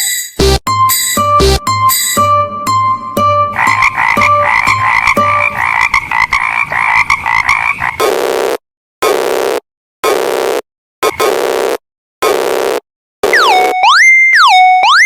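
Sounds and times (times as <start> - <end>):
fast pulsing cartoon sound: 3.6 - 7.8.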